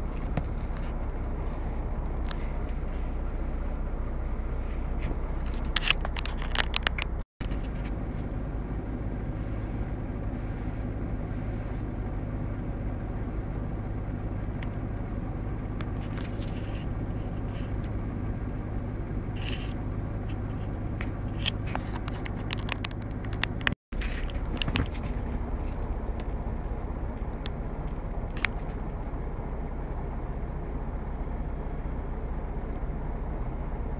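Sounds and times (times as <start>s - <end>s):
vehicle engine rumble: 0.0s - 33.9s
short high beeps: 0.4s - 6.8s.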